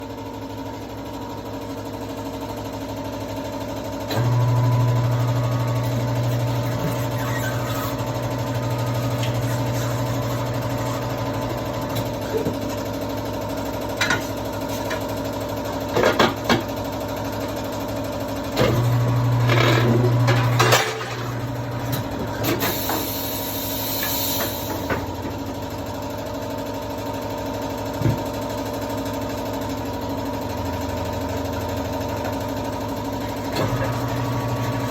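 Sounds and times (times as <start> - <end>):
machine motor hum: 4.1 - 15.9, 18.5 - 25.8, 30.4 - 34.9.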